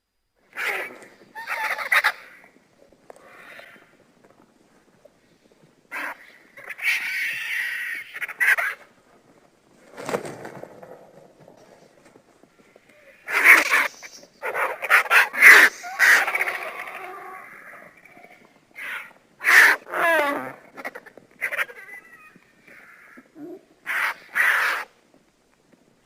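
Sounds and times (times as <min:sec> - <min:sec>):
vulture screeches: 0:03.2 - 0:04.0, 0:05.9 - 0:08.9, 0:13.0 - 0:24.9.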